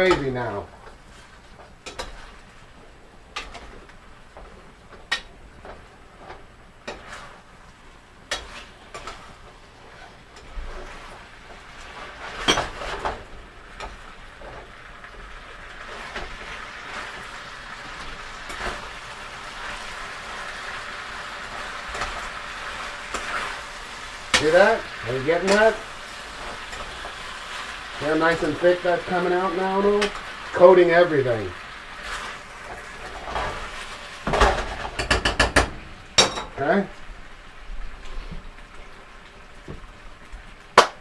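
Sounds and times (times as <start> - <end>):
food sizzling: 0.0 - 41.0
utensil knocking and scraping in pan: 5.0 - 7.4, 8.3 - 9.2, 34.2 - 36.6.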